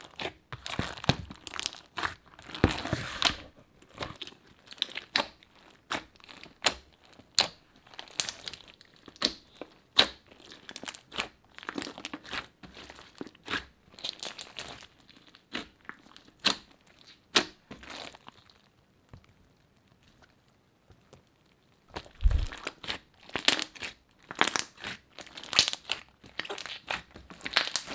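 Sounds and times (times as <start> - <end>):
crunchy slime crackling: 3.9 - 18.6, 21.9 - 27.9.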